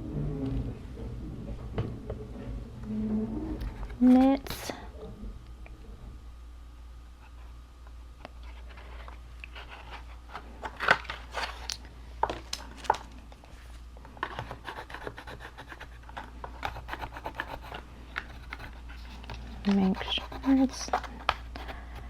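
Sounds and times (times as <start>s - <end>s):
cardstock scratching and tapping: 14.2s - 21.8s.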